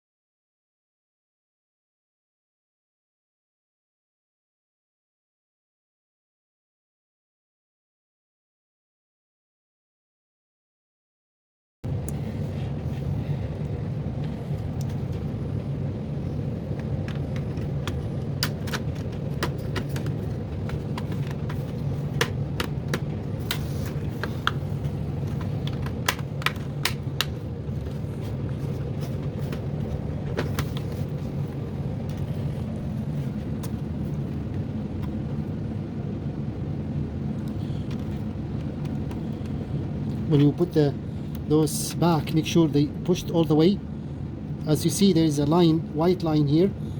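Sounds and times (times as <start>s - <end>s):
low machine hum: 11.8s - 46.9s.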